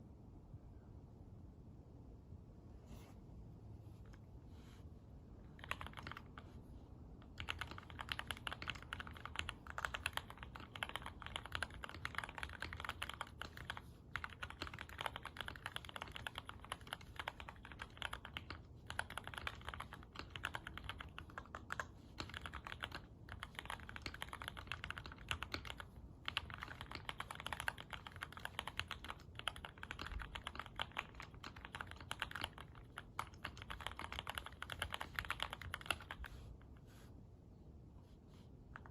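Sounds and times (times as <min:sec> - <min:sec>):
mechanical keyboard typing: 0:05.6 - 0:06.4, 0:07.2 - 0:36.3.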